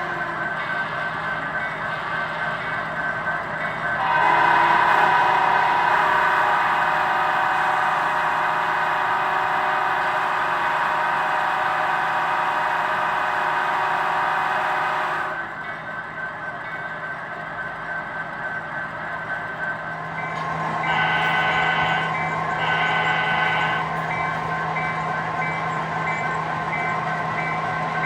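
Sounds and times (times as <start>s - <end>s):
model locomotive air horn chord: 4.0s - 15.5s, 20.8s - 24.0s.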